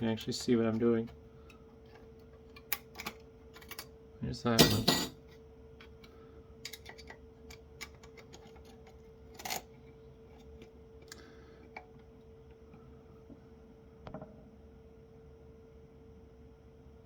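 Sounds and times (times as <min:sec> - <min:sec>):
faint steady hum: 0:00.0 - 0:17.0
metal parts and tools clicking: 0:06.6 - 0:09.7.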